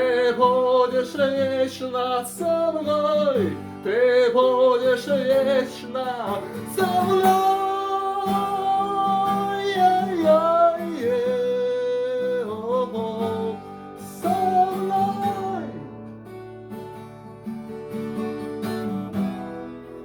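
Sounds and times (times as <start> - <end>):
guitar accompaniment: 0.0 - 20.0.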